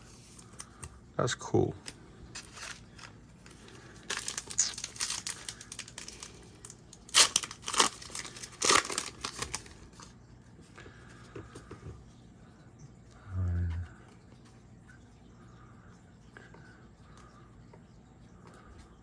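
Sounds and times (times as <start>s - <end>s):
plastic wrapper crinkling: 1.8s - 10.1s
plastic wrapper ripping: 2.4s - 10.1s.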